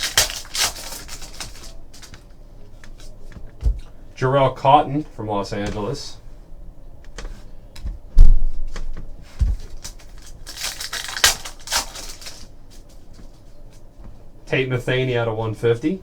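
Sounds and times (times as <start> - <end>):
cards clicking and tapping: 0.0 - 4.0
cards rustling and sliding: 0.0 - 4.0, 8.7 - 13.1.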